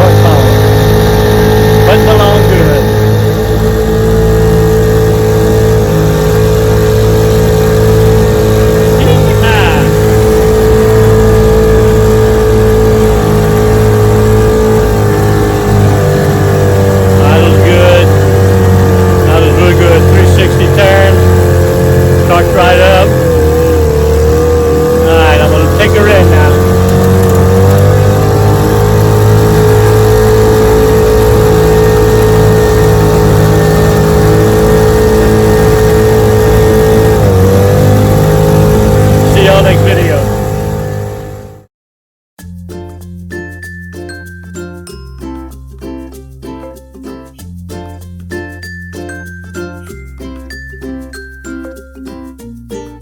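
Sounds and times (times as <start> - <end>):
outboard motor running steadily: 0.0 - 41.7.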